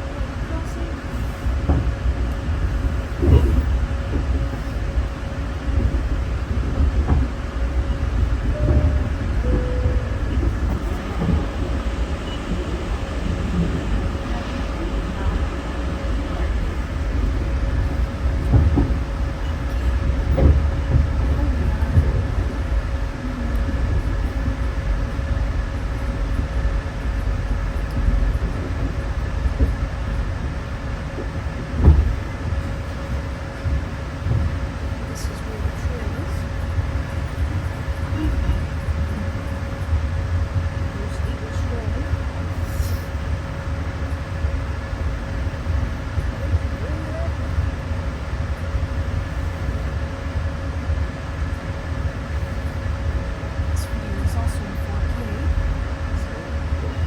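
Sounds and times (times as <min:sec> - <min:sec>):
train rumble inside coach: 0:00.0 - 0:57.0.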